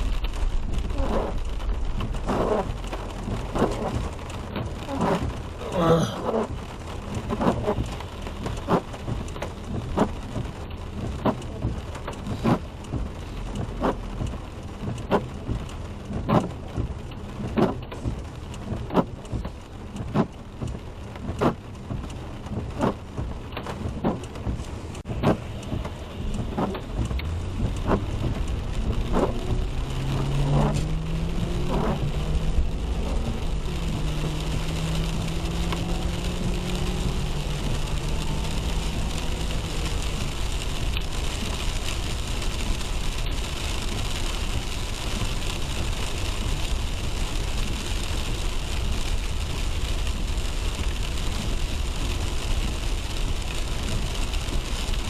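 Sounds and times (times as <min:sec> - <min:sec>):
rain hissing on a car: 0:00.0 - 0:55.0
windshield wipers sweeping: 0:00.0 - 0:55.0
car engine speeding up: 0:25.1 - 0:40.8.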